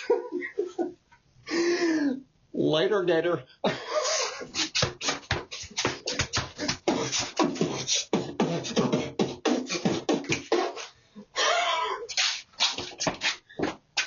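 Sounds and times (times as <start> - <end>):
person beatboxing: 4.4 - 11.0.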